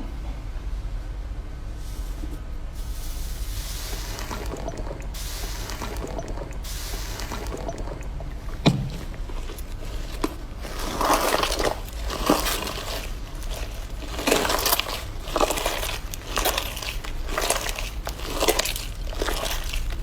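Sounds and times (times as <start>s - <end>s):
wet crackling squishes: 3.2s - 20.0s
slime squishing by hand: 3.4s - 20.0s.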